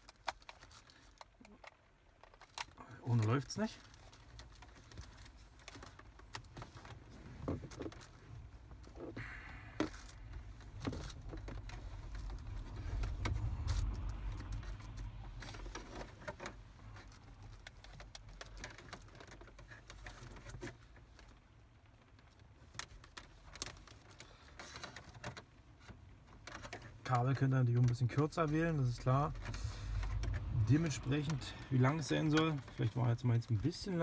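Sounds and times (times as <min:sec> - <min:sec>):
cable plugs clicking and rattling: 0:00.0 - 0:34.0
low rumble: 0:09.1 - 0:17.0, 0:28.4 - 0:33.6.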